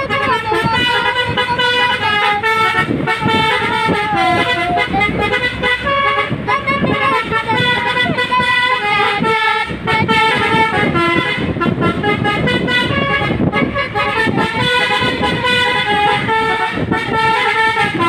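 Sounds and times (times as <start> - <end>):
multi-tone air horn tune: 0.0 - 18.0
vehicle rumble: 0.0 - 18.0.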